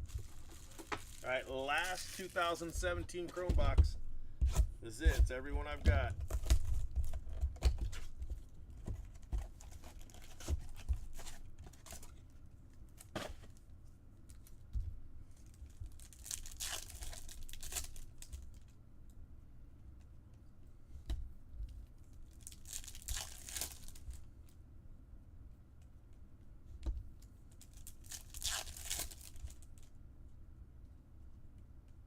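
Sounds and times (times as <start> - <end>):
wrappers tearing and crinkling: 0.0 - 2.8, 9.6 - 12.2, 15.9 - 18.6, 22.3 - 24.2, 27.5 - 29.9.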